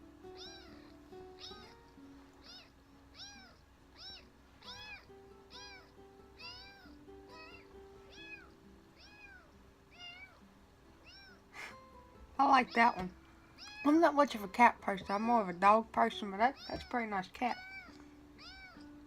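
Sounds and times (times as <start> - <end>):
soft background music: 0.0 - 19.0
cat meowing: 0.3 - 1.8, 2.4 - 10.4, 11.0 - 11.7, 12.6 - 13.9, 16.6 - 18.9.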